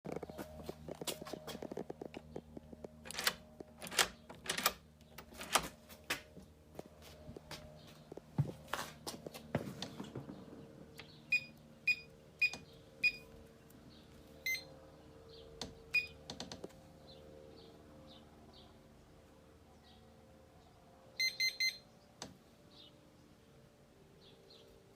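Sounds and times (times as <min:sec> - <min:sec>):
clicks and knocks of handling lock: 0:03.0 - 0:05.7
short high keypad beeps: 0:21.2 - 0:21.8.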